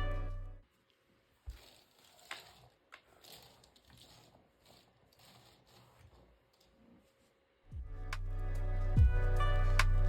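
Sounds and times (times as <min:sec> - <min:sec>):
background music: 0:00.0 - 0:00.6, 0:07.7 - 0:10.0.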